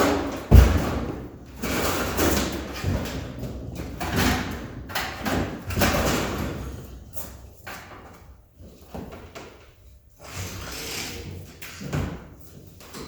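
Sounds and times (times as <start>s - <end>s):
knocks: 0.5s - 1.3s.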